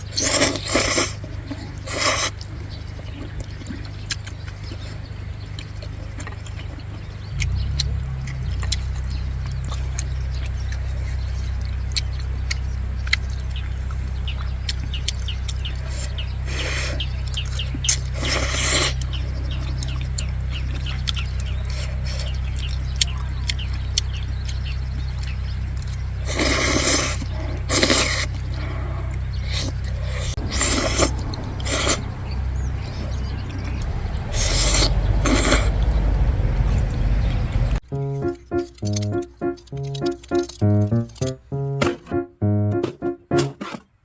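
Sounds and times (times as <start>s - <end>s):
wind rumbling on microphone: 30.3s - 37.8s.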